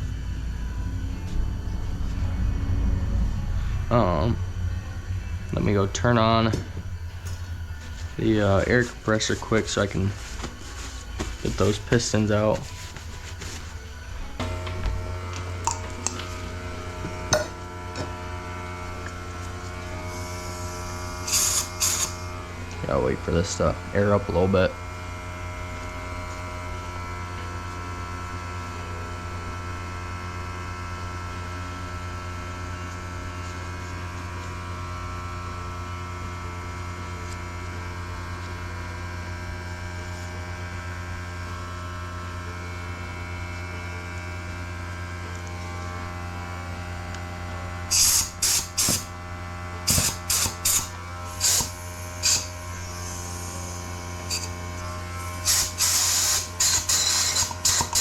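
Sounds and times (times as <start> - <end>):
air compressor humming: 0.0 - 58.0
compressed air hissing blasts: 19.9 - 22.4, 47.9 - 49.2, 49.8 - 58.0.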